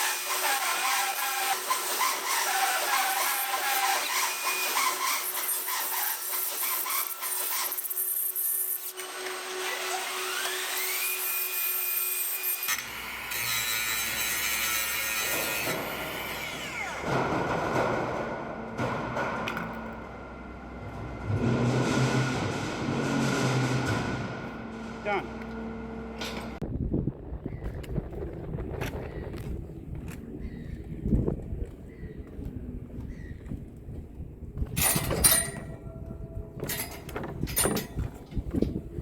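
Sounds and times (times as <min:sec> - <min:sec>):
power tool cutting wood: 0:00.0 - 0:17.2.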